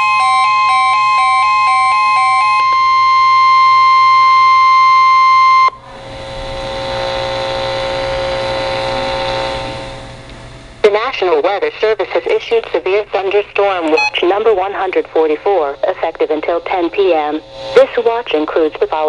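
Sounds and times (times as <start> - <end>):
static hiss with hum: 5.7 - 19.0
two-note beeping melody: 14.0 - 14.2.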